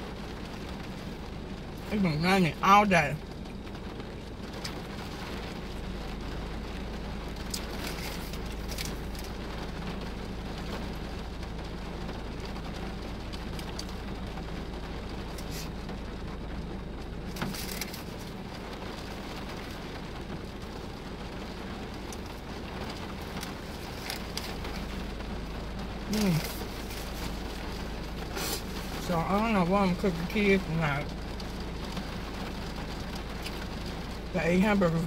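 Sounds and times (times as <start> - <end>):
car low hum: 0.0 - 35.0
rain falling on a car: 0.0 - 35.0
short crackles: 17.3 - 20.6.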